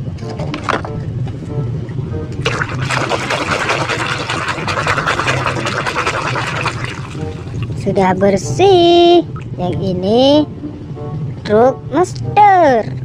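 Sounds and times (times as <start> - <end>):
water splashing over a toy: 2.4 - 7.7.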